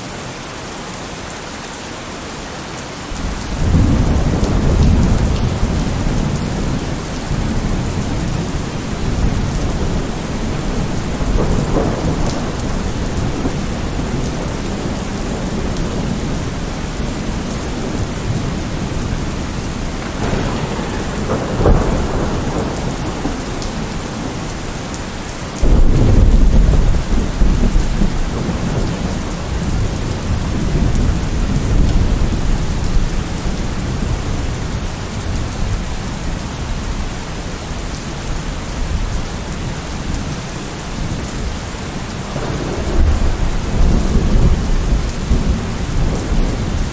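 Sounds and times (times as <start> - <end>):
heavy rain: 0.0 - 46.9
rolling thunder: 3.1 - 37.1, 41.0 - 46.9
loud thunder crack: 3.2 - 32.8, 42.3 - 46.9.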